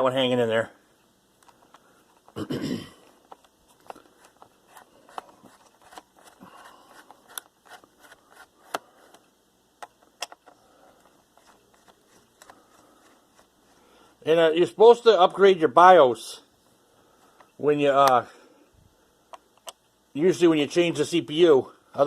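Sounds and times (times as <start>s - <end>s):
screwdriver clicks and scrapes: 3.3s - 9.2s.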